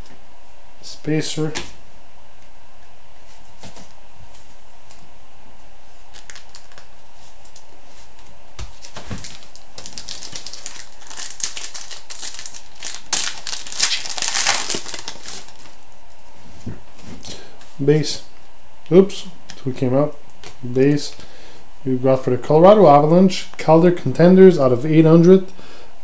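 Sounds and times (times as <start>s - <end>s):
cards and packaging crinkling: 6.1s - 7.7s, 8.6s - 15.8s.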